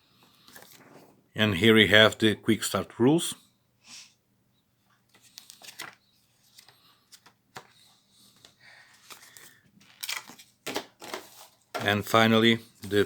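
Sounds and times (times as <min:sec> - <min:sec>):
paper and card rustling: 0:00.3 - 0:01.2, 0:05.1 - 0:13.0.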